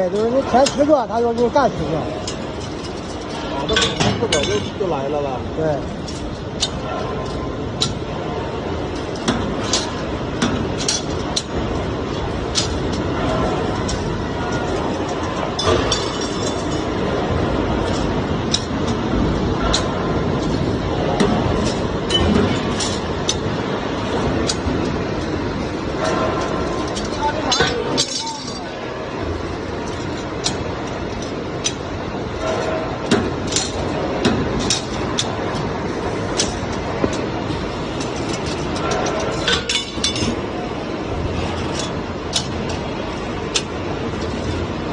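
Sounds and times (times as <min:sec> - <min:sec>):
bending machine running: 0:00.0 - 0:44.9
sharp metal clanks: 0:29.9 - 0:40.4.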